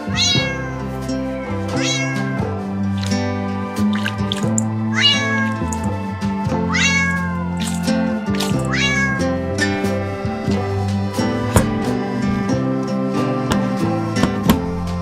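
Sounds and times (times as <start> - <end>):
cat meowing: 0.0 - 0.9, 1.7 - 2.6, 4.8 - 5.8, 6.6 - 10.2
background music: 0.0 - 15.0.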